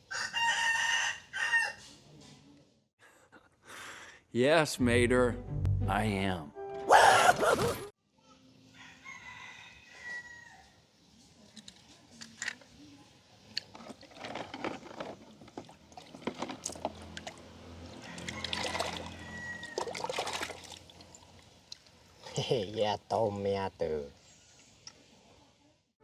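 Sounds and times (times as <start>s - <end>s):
toy cars clicking and knocking: 13.6s - 17.3s
water pouring and trickling: 13.6s - 22.2s.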